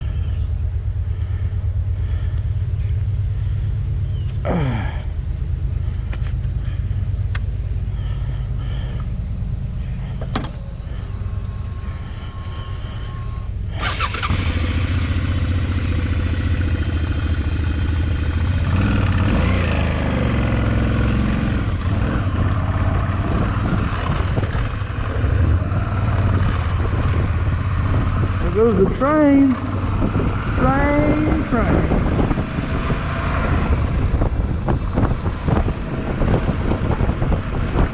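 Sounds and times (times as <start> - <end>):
train passing with low rumble: 0.0 - 13.8.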